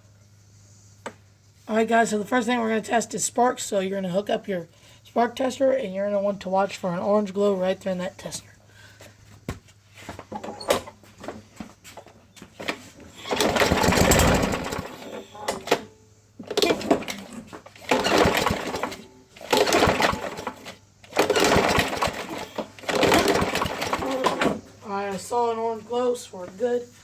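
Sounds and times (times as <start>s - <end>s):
mower engine pull-started: 12.6s - 24.8s.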